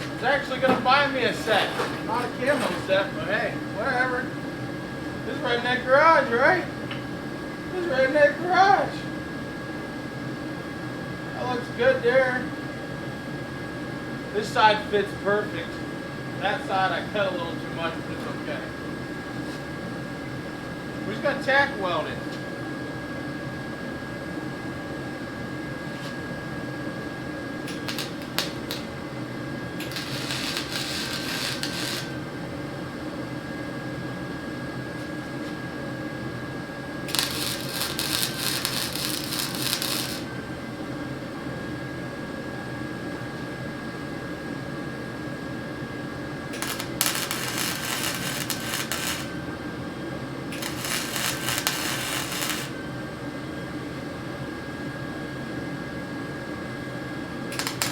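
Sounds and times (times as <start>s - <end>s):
arc welder crackling: 0.0s - 3.2s, 27.6s - 32.4s, 37.0s - 40.5s, 46.5s - 49.5s, 50.4s - 52.8s, 57.5s - 57.9s.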